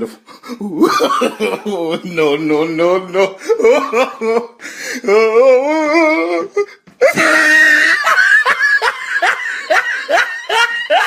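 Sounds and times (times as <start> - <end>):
person laughing: 0.0 - 2.3, 3.3 - 11.0
person wailing: 3.1 - 11.0.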